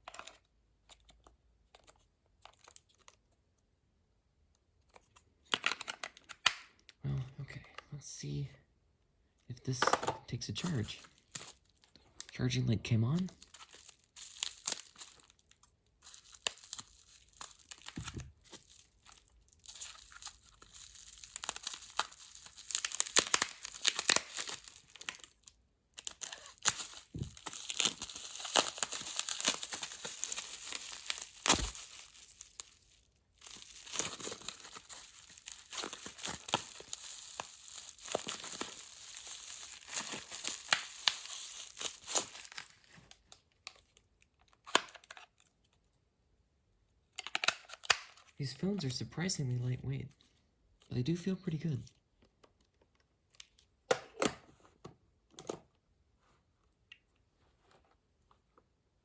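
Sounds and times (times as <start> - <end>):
plastic packaging crinkling: 10.6 - 45.4, 47.2 - 48.2.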